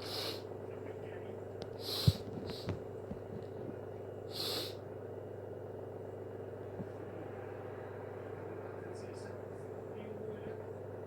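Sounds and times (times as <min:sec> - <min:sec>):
person taking hissing breath: 0:00.0 - 0:00.5, 0:01.8 - 0:02.7, 0:04.3 - 0:04.8
steady low hum: 0:00.0 - 0:11.0.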